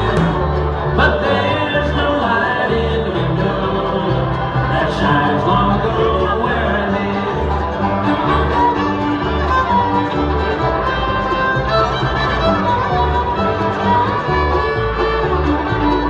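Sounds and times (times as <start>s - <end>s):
steady bass beat: 0.0s - 5.8s
bluegrass band playing: 0.0s - 16.0s
fiddle lead: 0.0s - 16.0s.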